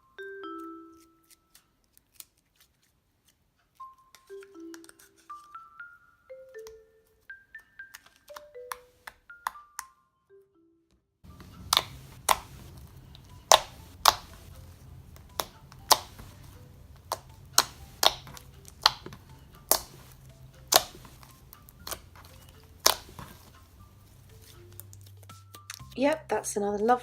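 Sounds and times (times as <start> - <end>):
slime squeezed clicking and popping: 11.4 - 23.6.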